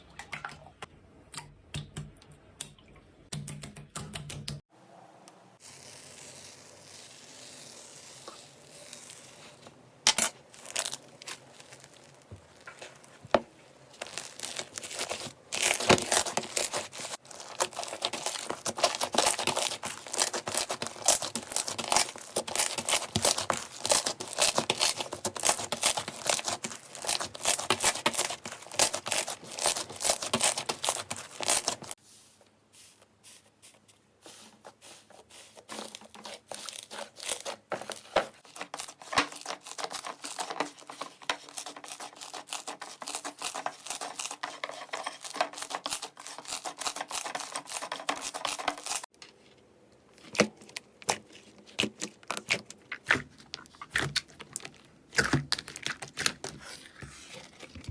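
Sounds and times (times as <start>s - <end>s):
slime crackling and popping: 10.6s - 32.0s.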